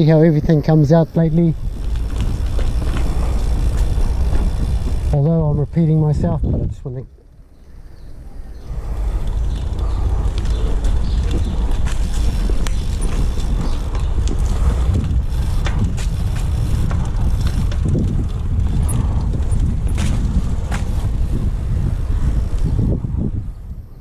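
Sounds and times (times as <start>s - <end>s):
bicycle clicks and rattles: 0.0s - 24.0s
wind rumbling on microphone: 0.0s - 24.0s.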